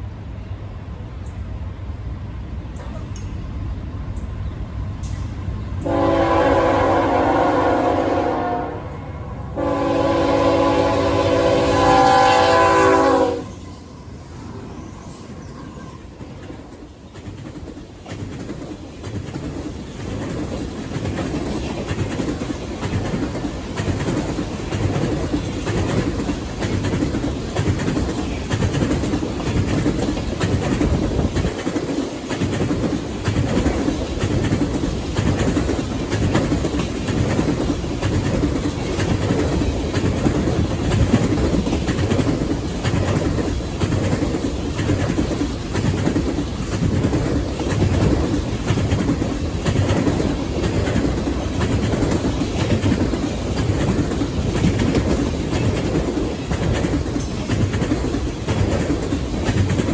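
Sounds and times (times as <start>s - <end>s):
continuous train rumble: 0.0s - 59.9s
train wheels clacking on rail joints: 14.8s - 59.9s.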